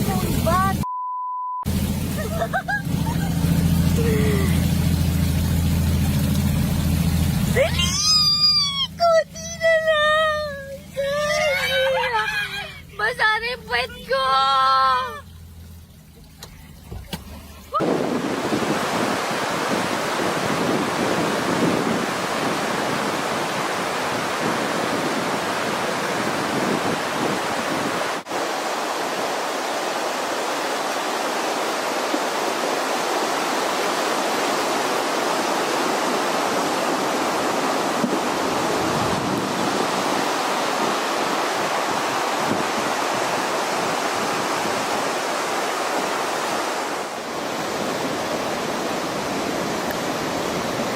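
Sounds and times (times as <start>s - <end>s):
floodwater rushing: 0.0s - 0.8s, 1.7s - 50.9s.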